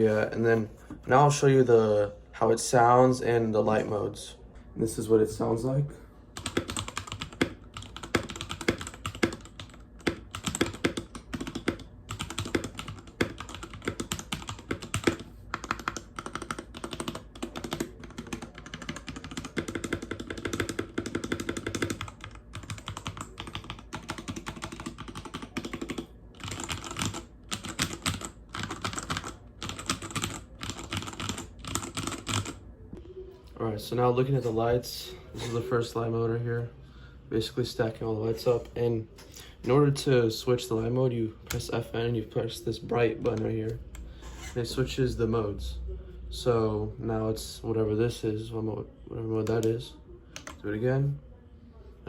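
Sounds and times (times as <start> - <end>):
mechanical keyboard typing: 6.4 - 32.6, 50.4 - 50.6.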